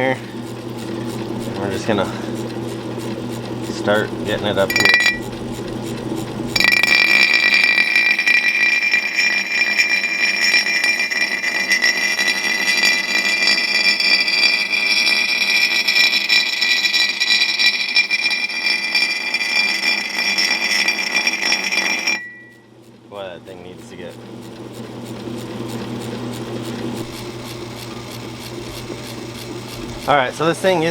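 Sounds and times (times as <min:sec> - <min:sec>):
grinder motor humming: 0:00.0 - 0:30.9
axe grinding on grindstone: 0:04.6 - 0:22.6.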